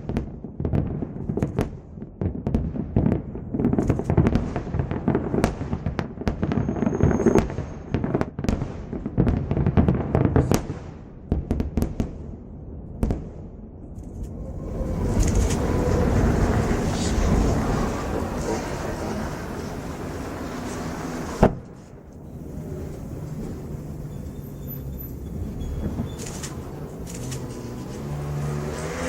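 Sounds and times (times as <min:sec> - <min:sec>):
fireworks bursting and crackling: 0:00.0 - 0:12.2, 0:14.0 - 0:29.0
steady noise: 0:14.3 - 0:28.4.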